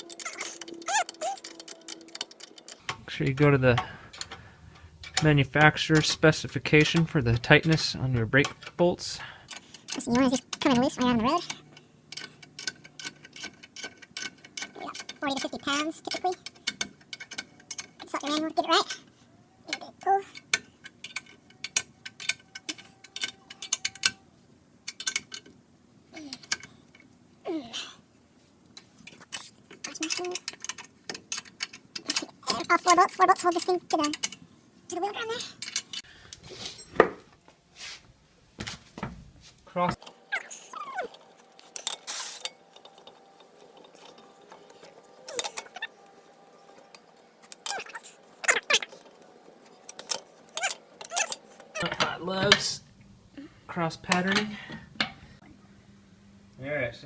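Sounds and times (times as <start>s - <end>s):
short squeaky tone: 0.2s - 1.6s
bolt creaking: 49.9s - 51.9s.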